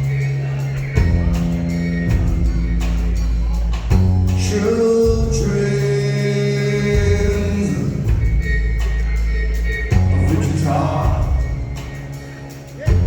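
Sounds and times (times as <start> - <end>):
rock band playing: 0.0 - 13.0
man singing: 4.4 - 11.9.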